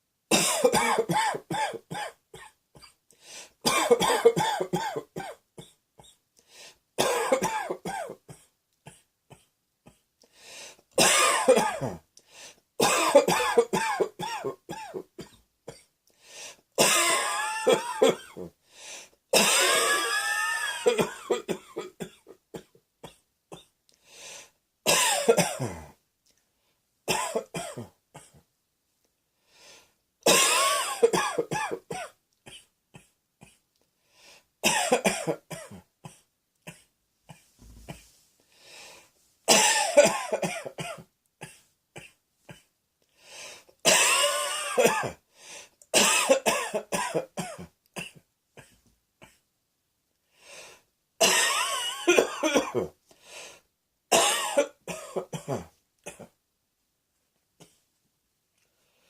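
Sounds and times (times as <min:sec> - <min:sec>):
person coughing: 0:00.3 - 0:03.0, 0:03.6 - 0:06.2, 0:07.0 - 0:10.0, 0:11.0 - 0:12.1, 0:12.8 - 0:15.9, 0:16.8 - 0:18.5, 0:19.4 - 0:23.7, 0:24.9 - 0:26.0, 0:27.1 - 0:28.4, 0:30.2 - 0:33.6, 0:34.6 - 0:38.1, 0:39.5 - 0:42.7, 0:43.8 - 0:45.2, 0:46.0 - 0:49.4, 0:51.2 - 0:53.0, 0:54.1 - 0:56.4.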